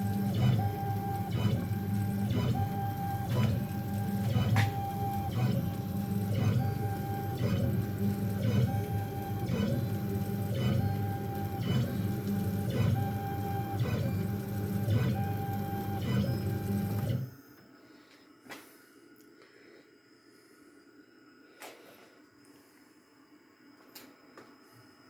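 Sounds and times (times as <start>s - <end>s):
cnc machine humming: 0.0s - 17.5s
motor whine: 0.0s - 17.6s.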